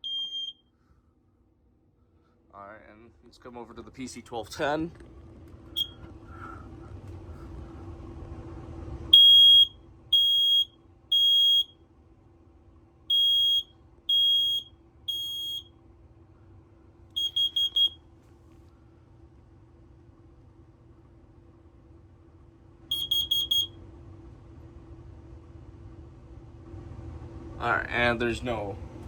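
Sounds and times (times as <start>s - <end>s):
smoke alarm beeps: 0.0s - 0.7s, 5.7s - 6.0s, 9.1s - 11.8s, 13.1s - 15.8s, 17.2s - 18.1s, 22.9s - 23.8s.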